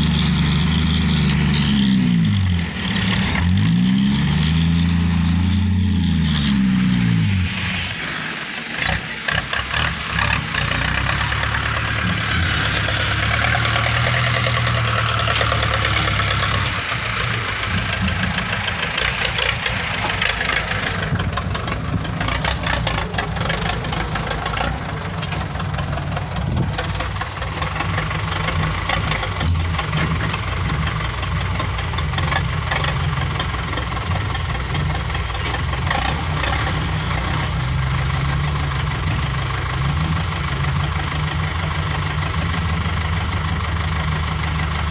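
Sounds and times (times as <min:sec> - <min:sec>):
vehicle engine running: 0:00.0 - 0:44.9.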